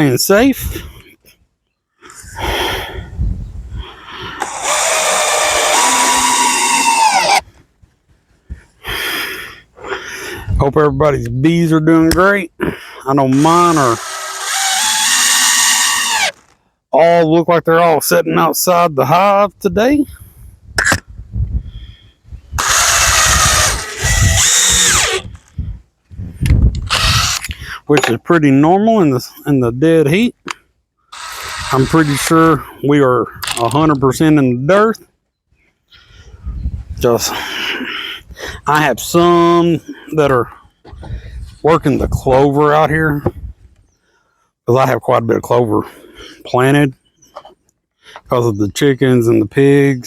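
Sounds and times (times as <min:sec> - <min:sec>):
short noise bursts: 0:03.8 - 0:07.6, 0:13.3 - 0:16.6, 0:22.6 - 0:25.6, 0:26.8 - 0:27.7, 0:31.1 - 0:32.3
power drill running: 0:04.3 - 0:07.4, 0:13.3 - 0:16.6, 0:22.6 - 0:25.5, 0:26.9 - 0:27.5, 0:31.1 - 0:32.4.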